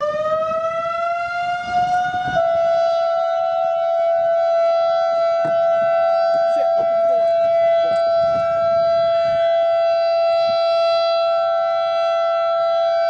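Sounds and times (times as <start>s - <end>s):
lower steady siren tone: 0.0s - 13.0s
warning sirens steady tone: 0.0s - 13.0s.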